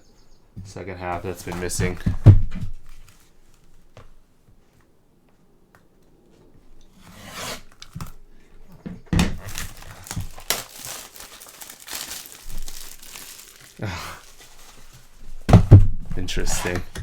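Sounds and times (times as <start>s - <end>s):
wrapper tearing and crinkling: 9.4s - 15.4s.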